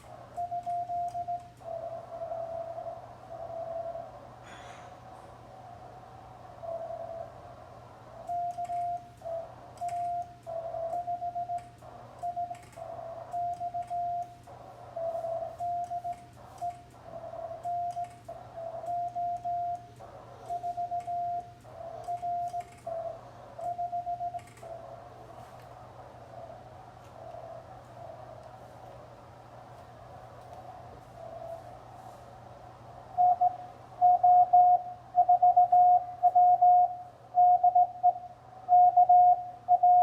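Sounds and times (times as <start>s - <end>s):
morse code tone: 0.0s - 4.2s, 6.5s - 7.5s, 8.1s - 25.6s, 33.1s - 40.0s
faint radio hiss: 0.0s - 40.0s
steady low hum: 0.0s - 40.0s.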